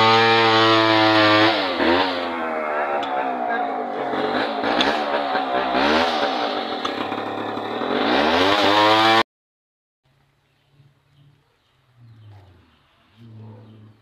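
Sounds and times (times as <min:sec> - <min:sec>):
chainsaw engine revving: 0:00.0 - 0:09.2.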